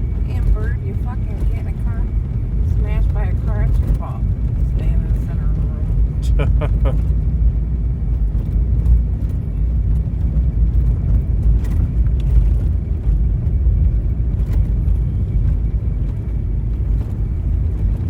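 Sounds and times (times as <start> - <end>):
vehicle engine and tyre rumble: 0.0 - 18.0.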